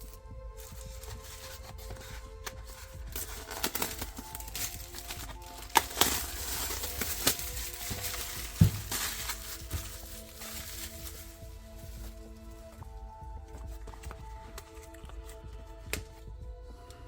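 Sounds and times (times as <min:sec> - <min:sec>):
wrenches and packaging rustling: 0:00.0 - 0:15.9
soft background music: 0:00.0 - 0:17.0
dull thump: 0:08.5 - 0:09.2.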